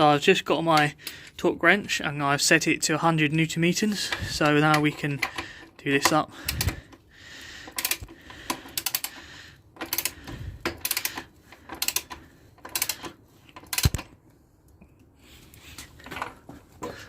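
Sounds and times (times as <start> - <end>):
torque wrench ratchet clicking: 7.7 - 9.2, 9.8 - 14.0.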